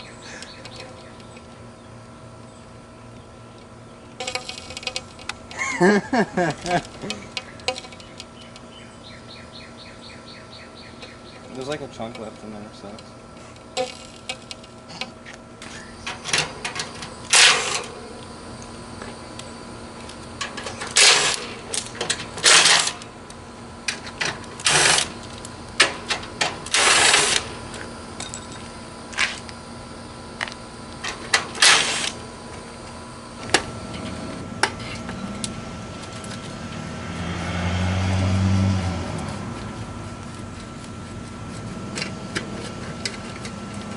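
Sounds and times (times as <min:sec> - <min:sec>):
faint steady hum: 0:00.0 - 0:37.3
low humming sound: 0:00.0 - 0:43.9
sharp metal clanks and rattles: 0:04.2 - 0:05.3, 0:13.7 - 0:18.1, 0:20.2 - 0:23.1, 0:23.9 - 0:27.6.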